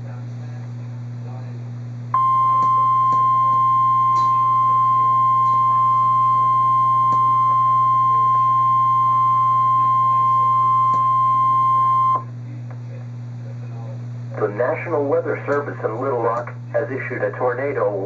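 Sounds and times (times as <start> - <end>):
low radio hum: 0.0 - 18.0
high pure alarm tone: 2.2 - 12.3.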